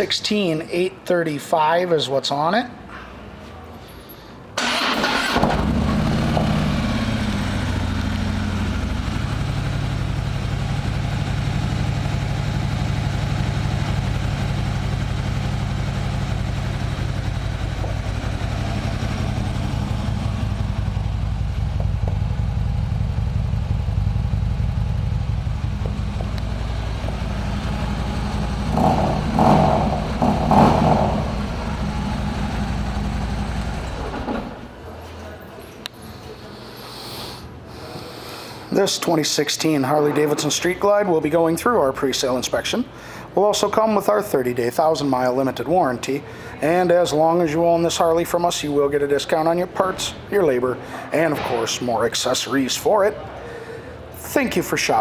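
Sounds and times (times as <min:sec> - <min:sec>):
motorcycle engine idling: 0:05.1 - 0:34.6.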